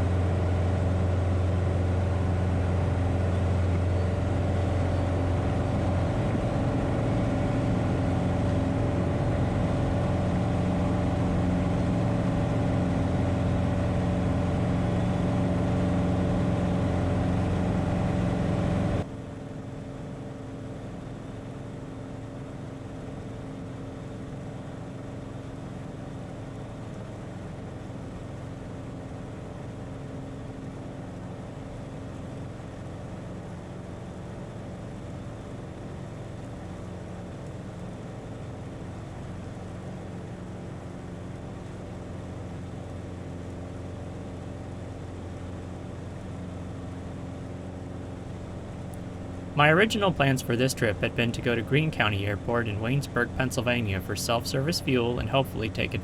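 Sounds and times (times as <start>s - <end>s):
airplane engine and propeller droning: 0.0s - 56.0s.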